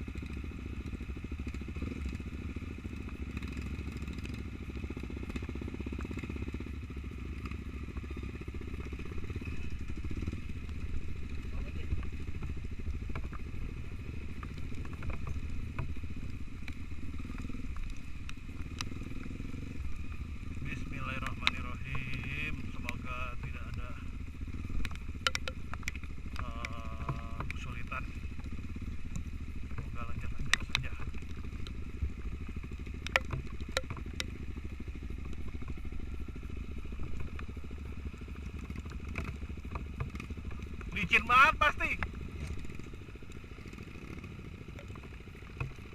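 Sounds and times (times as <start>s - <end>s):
motorcycle engine running: 0.0s - 45.9s
sharp clicks and clatter: 20.4s - 45.9s
sharp clicks: 24.8s - 27.6s, 33.0s - 34.4s.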